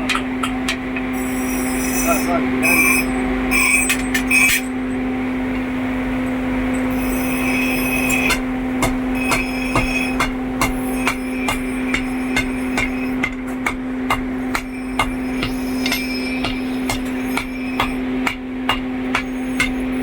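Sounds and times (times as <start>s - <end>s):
steady machine hum: 0.0s - 20.0s
hammer blows on metal: 8.0s - 20.0s.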